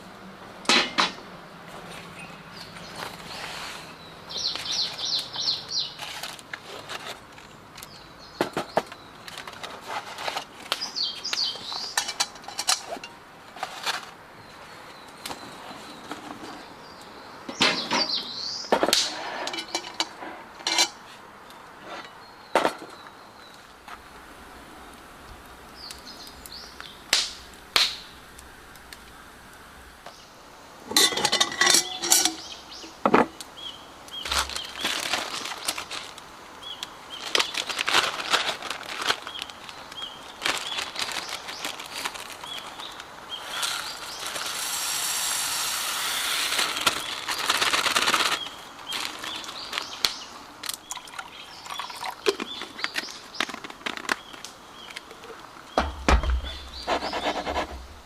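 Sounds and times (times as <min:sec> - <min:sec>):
birds warbling: 0:31.0 - 0:35.9, 0:39.2 - 0:53.5, 0:54.2 - 0:58.0.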